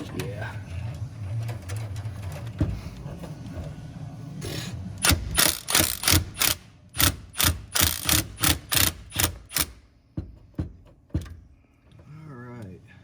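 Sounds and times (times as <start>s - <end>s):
socket ratchet clicking: 4.5s - 9.9s.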